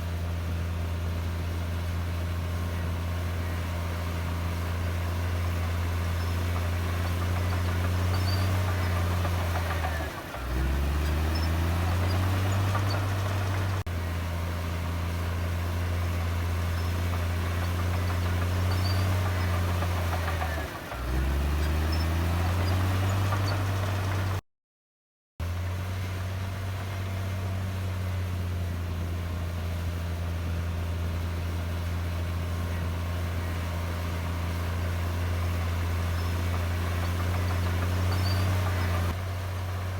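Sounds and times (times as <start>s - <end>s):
bulldozer diesel engine running: 0.0s - 24.4s, 25.4s - 39.9s.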